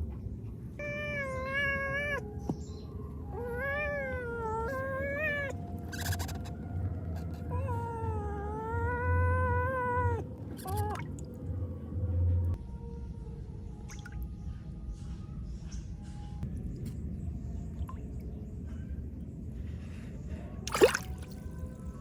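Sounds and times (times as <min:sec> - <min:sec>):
kitten meowing: 0:00.8 - 0:02.3, 0:07.5 - 0:11.1
low hum: 0:10.2 - 0:22.0.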